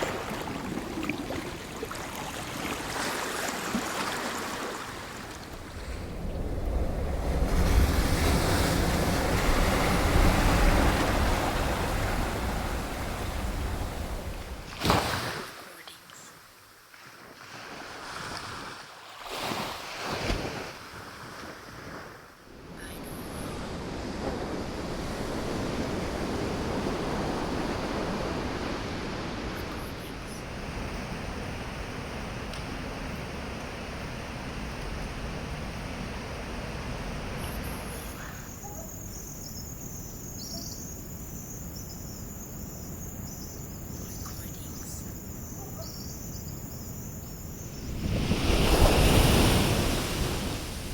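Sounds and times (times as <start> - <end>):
ocean wave washing in: 0.0 - 14.9, 47.8 - 50.9
ocean surf washing on beach: 0.0 - 15.9, 19.4 - 38.7, 47.4 - 50.9.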